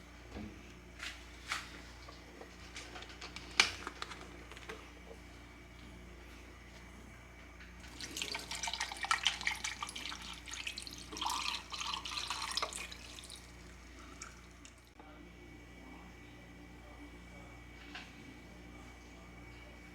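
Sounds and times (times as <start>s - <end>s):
tap water splashing into sink: 7.8s - 13.4s.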